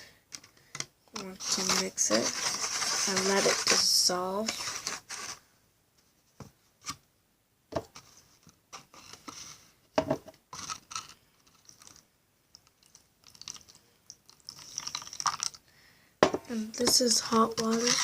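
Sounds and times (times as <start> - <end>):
pencil scraping plastic container: 1.1 - 5.4, 16.8 - 18.0.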